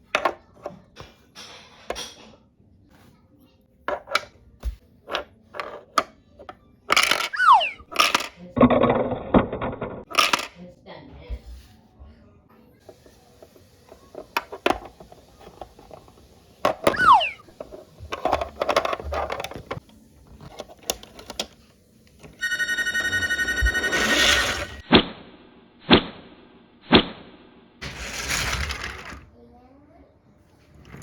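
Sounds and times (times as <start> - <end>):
toy electronic ringing tone: 7.3 - 7.9, 16.9 - 17.4, 22.4 - 24.8
short squeal: 7.4 - 7.9, 16.9 - 17.4.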